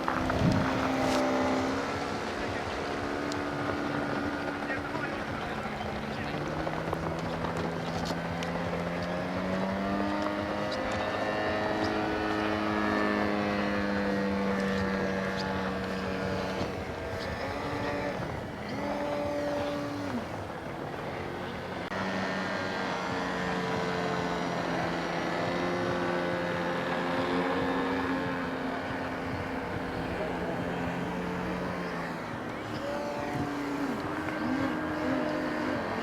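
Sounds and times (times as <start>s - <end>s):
model airplane engine in flight: 0.0s - 36.0s
second plane flying by: 0.0s - 36.0s.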